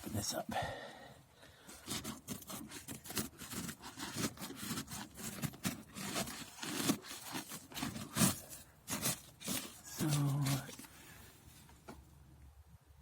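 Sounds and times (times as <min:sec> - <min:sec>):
paper wasp nest tearing: 0:01.7 - 0:10.9.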